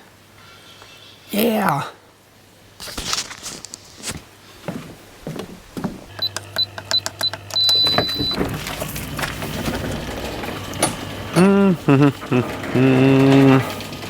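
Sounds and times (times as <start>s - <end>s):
low electric hum: 5.1s - 14.0s.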